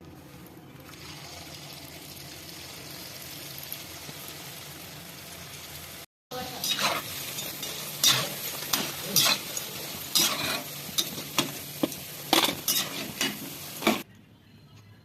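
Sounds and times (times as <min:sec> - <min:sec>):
deep-frying sizzle in oil: 0:00.1 - 0:14.0
spoon scraping a pan: 0:06.5 - 0:14.0.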